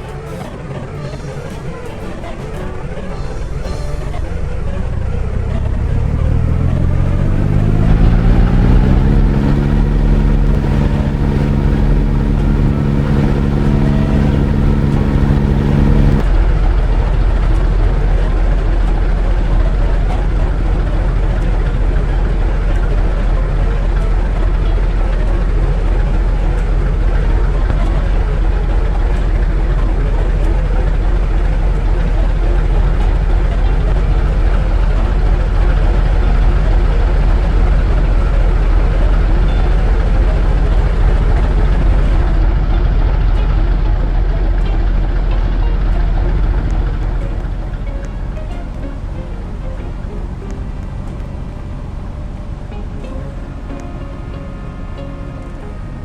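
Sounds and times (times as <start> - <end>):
steady low rumble: 3.3 - 56.0
motor spinning up: 5.4 - 16.2.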